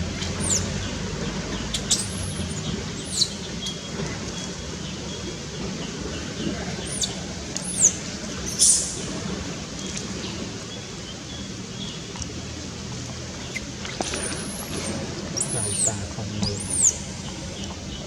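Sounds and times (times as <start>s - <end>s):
high-pitched chirping calls: 14.3s - 17.1s.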